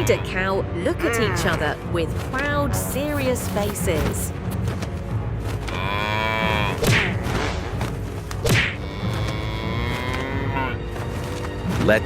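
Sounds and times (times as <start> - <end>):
cow mooing: 1.0 - 1.8, 5.7 - 7.8.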